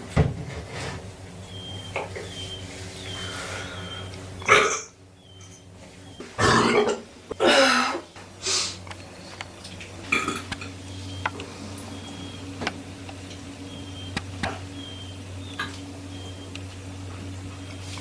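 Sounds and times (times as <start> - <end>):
low steady hum: 0.0 - 18.0
person burping: 4.4 - 4.9, 6.4 - 8.0, 10.1 - 10.5.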